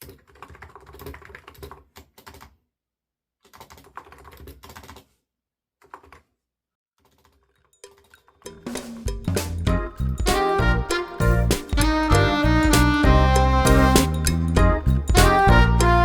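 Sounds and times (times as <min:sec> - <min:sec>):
loud background music: 0:09.1 - 0:16.0.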